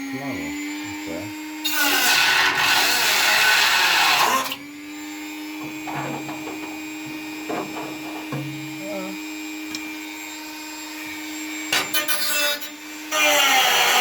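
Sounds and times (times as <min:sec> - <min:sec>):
machine hum: 0:05.4 - 0:10.1
faint knocks: 0:05.6 - 0:08.7.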